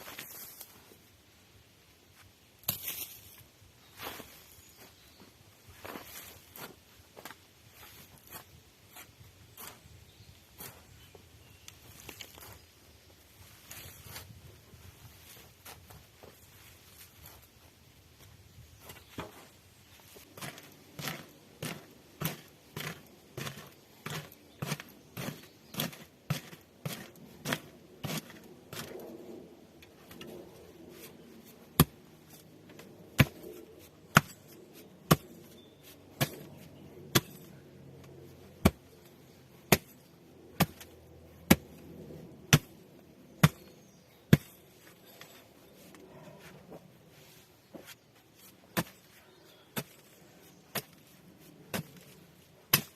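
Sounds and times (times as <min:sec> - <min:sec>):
hand tool striking: 0:36.1 - 0:37.6.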